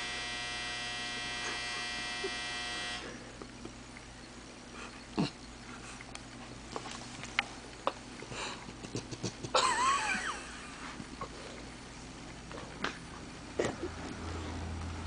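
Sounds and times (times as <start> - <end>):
pet snoring and grunting: 5.1 - 5.5.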